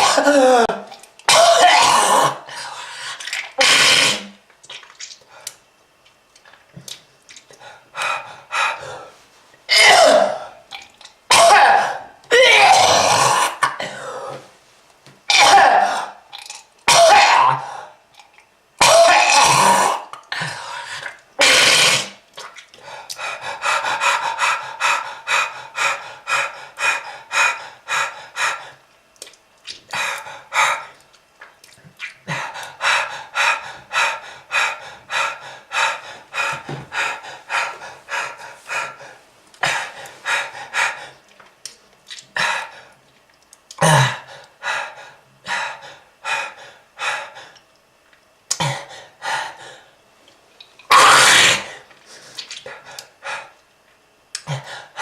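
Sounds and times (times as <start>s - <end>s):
person coughing and hacking: 0.0s - 2.4s, 9.7s - 10.4s, 11.3s - 14.0s, 15.3s - 16.2s, 16.8s - 17.6s, 18.8s - 20.0s.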